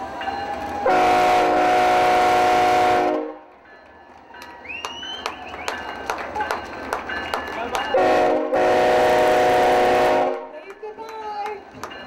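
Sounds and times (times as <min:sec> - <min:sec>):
locomotive air horn blast: 0:00.8 - 0:03.4, 0:07.9 - 0:10.5.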